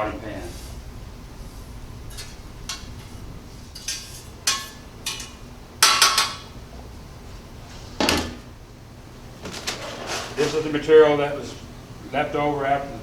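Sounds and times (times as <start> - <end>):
metal baskets clanking and scraping: 9.4 - 10.9.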